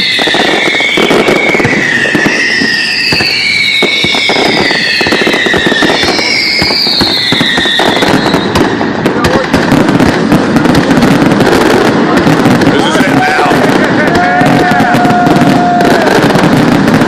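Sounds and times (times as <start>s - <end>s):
high falling whistles: 0.0s - 8.6s
fireworks bangs and crackles: 0.0s - 17.0s.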